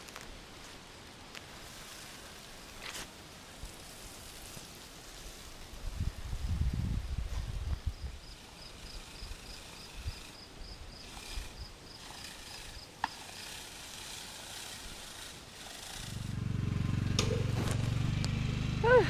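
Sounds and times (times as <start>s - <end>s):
cricket chirping: 7.1s - 16.0s
low engine hum: 15.8s - 19.0s.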